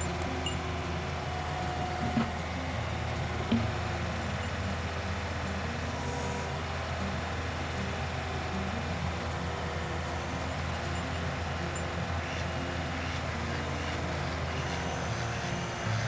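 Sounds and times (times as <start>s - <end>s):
skid steer engine running: 0.0s - 16.0s.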